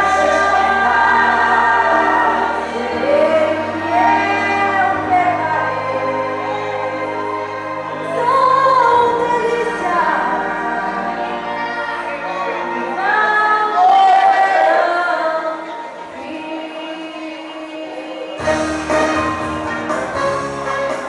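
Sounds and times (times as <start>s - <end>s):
woman singing gospel: 0.0s - 7.3s, 8.0s - 11.4s
band backing music: 0.0s - 16.3s, 18.2s - 21.0s.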